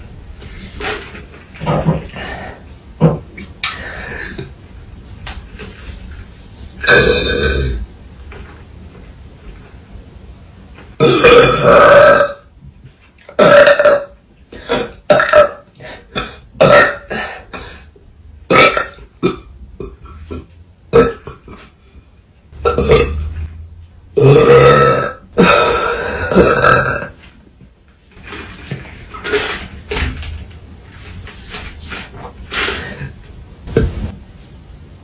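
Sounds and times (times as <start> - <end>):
women burping: 24.2 - 27.2.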